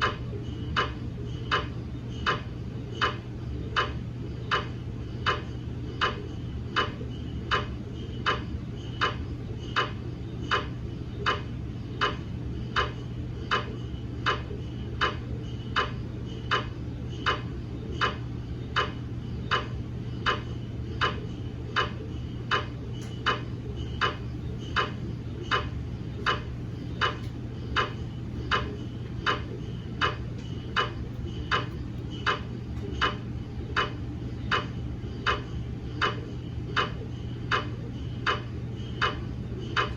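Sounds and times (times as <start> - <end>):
mri scanner knocking: 0.0 - 39.9
steady low hum: 0.0 - 39.9.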